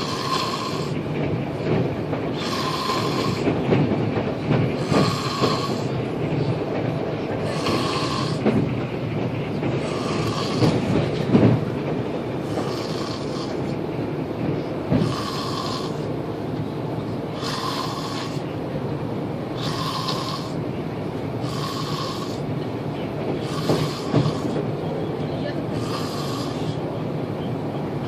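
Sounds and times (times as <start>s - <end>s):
man snoring: 0.0s - 1.0s, 2.4s - 3.4s, 4.8s - 5.9s, 7.4s - 8.4s, 9.8s - 10.8s, 12.5s - 13.7s, 15.0s - 16.1s, 17.4s - 18.5s, 19.5s - 20.6s, 21.4s - 22.4s, 23.4s - 24.6s, 25.8s - 26.8s
train rumble: 0.0s - 28.0s.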